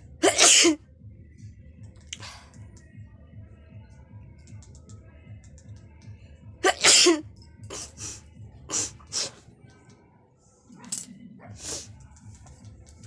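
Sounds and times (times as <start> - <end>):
woman sneezing: 0.2 - 0.8, 6.6 - 8.1.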